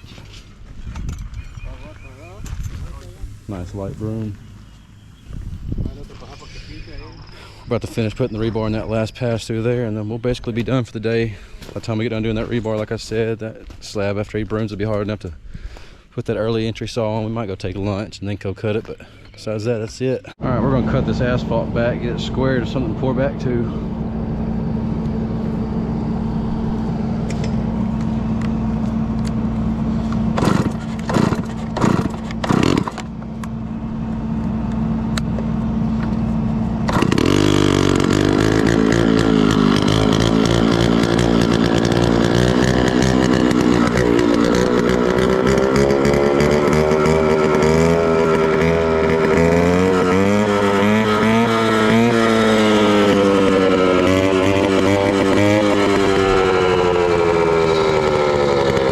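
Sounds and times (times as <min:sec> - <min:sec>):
concrete saw cutting asphalt: 0:29.8 - 0:33.2, 0:36.8 - 0:58.9.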